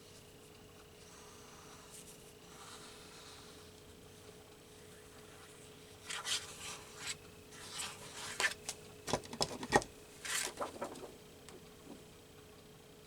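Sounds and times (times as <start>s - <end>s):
paper rustling and rubbing: 5.2s - 8.8s, 9.5s - 11.2s.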